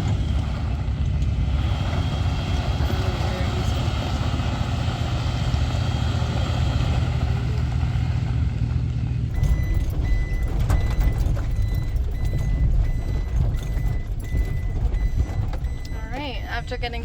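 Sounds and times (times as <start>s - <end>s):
vehicle engine running: 0.0s - 17.0s
high electronic beep: 9.3s - 17.0s.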